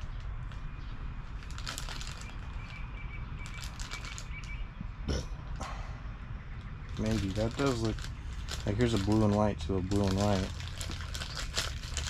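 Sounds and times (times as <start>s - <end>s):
low background rumble: 0.0s - 12.0s
rustling of wiring harness: 1.2s - 4.6s, 6.9s - 12.0s
plastic connectors clicking: 6.9s - 12.0s.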